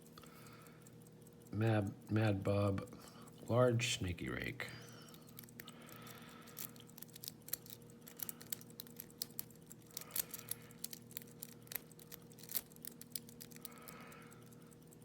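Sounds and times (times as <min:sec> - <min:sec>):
faint steady hum: 0:00.0 - 0:15.0
metallic lock picking clicks: 0:05.1 - 0:15.0.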